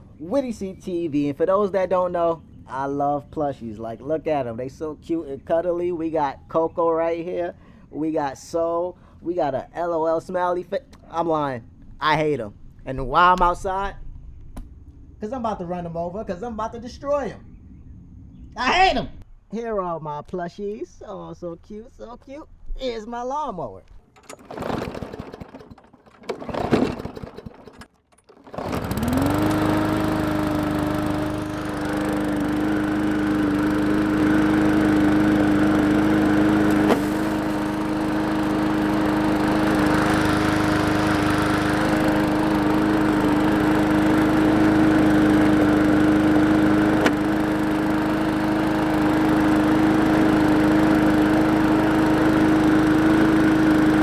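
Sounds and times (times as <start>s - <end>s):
lawn mower engine running: 24.1s - 54.0s.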